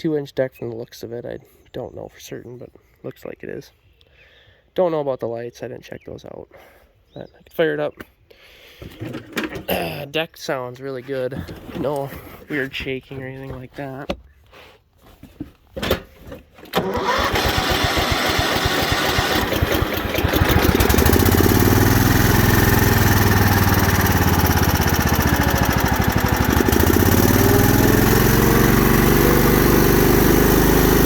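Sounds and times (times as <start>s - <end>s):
mower engine starting and running: 8.9s - 9.8s, 15.9s - 31.0s.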